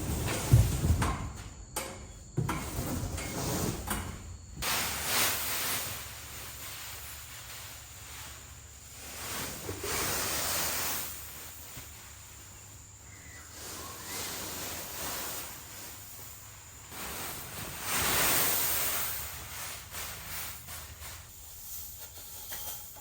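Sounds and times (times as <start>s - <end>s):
knocking and scraping materials: 0.0s - 4.8s, 19.7s - 23.0s.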